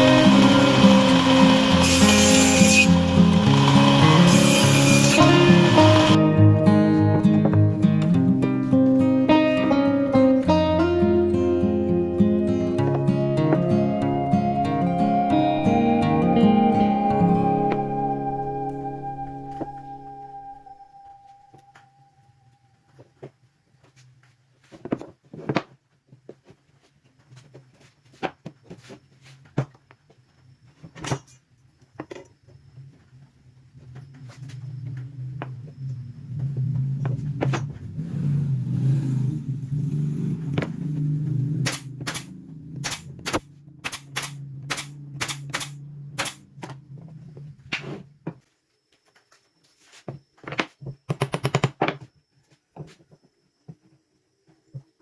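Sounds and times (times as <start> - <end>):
low machine hum: 0.0 - 8.4
sharp strikes on wood: 41.6 - 46.4.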